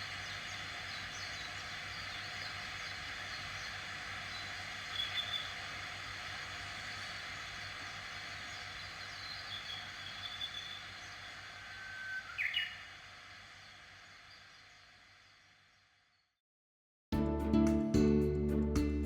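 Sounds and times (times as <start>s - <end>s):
birds whistling and chirping: 0.0s - 5.6s, 8.5s - 12.9s
outdoor background hiss: 0.0s - 16.2s.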